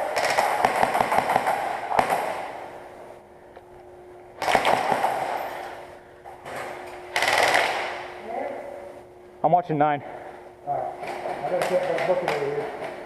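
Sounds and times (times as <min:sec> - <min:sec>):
airsoft gun firing bursts: 0:00.0 - 0:02.6, 0:04.4 - 0:05.4, 0:07.1 - 0:08.1.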